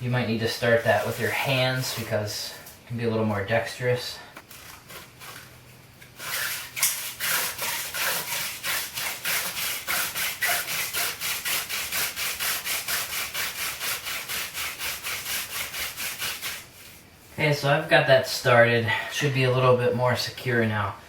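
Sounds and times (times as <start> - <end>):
spindle rubbing in wooden fireboard: 0.4 - 2.5, 6.2 - 17.5.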